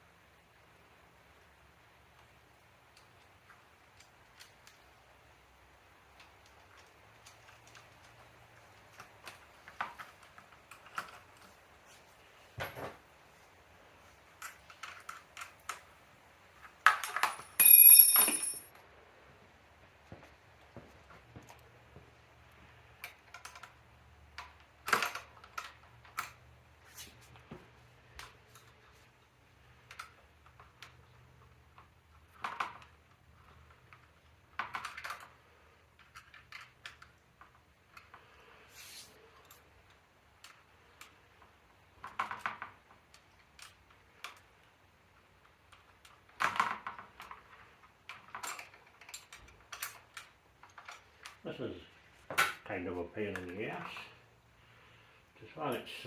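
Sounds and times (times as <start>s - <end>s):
hand tools clicking and tapping: 16.6s - 18.7s.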